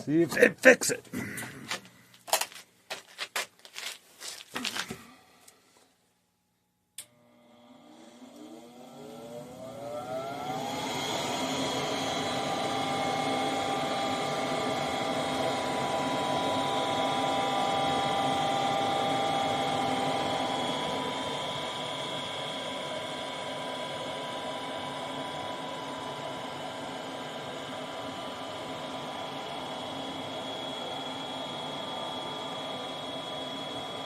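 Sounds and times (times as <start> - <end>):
furnace fan motor whining: 7.0 - 34.0.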